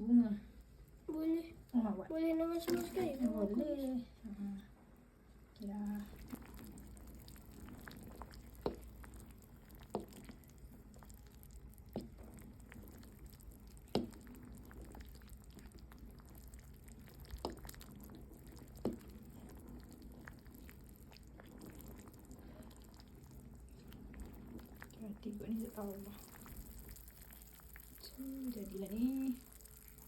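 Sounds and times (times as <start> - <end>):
low steady hum: 0.0 - 30.0.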